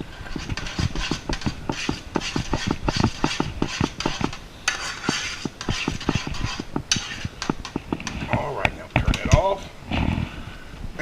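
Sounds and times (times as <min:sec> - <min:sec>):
spoon scraping a container: 0:00.0 - 0:08.5.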